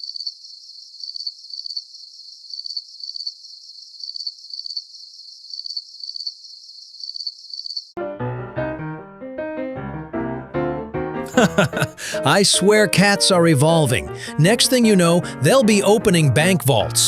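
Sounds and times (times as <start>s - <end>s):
cricket chirping: 0.0s - 8.0s.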